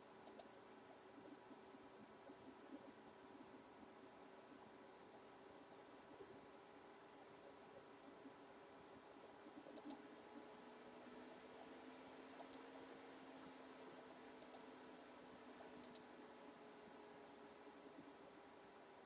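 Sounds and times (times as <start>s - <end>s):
faint steady hum: 0.0s - 19.0s
computer mouse clicks: 0.2s - 0.5s, 3.2s - 3.4s, 9.5s - 10.1s, 12.3s - 12.7s, 14.4s - 14.7s, 15.7s - 16.1s.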